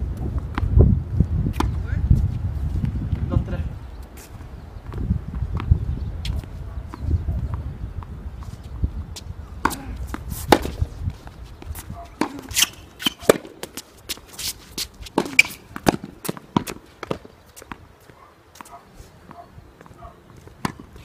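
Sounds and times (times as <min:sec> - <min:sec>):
tennis balls bouncing on court: 0:04.8 - 0:08.6, 0:09.6 - 0:21.0
tennis balls struck by rackets: 0:09.6 - 0:10.9, 0:11.8 - 0:13.8, 0:15.1 - 0:17.9, 0:18.6 - 0:21.0.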